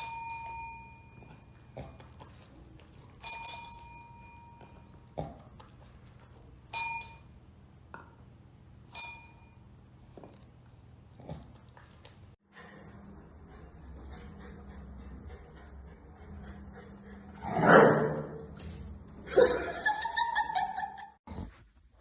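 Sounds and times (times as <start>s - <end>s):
small metal bell ringing: 0.0s - 1.8s, 3.2s - 5.2s, 6.7s - 7.4s, 8.9s - 9.8s.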